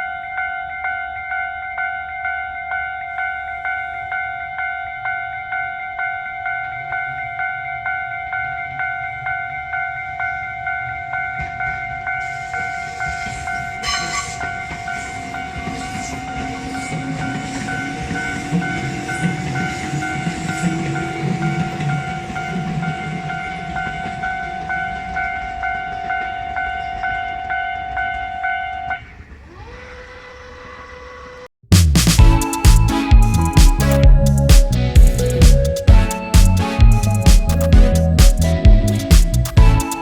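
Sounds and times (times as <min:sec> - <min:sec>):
level crossing alarm dinging: 0:00.0 - 0:30.5, 0:32.2 - 0:40.0
electric train rumbling: 0:03.0 - 0:40.0.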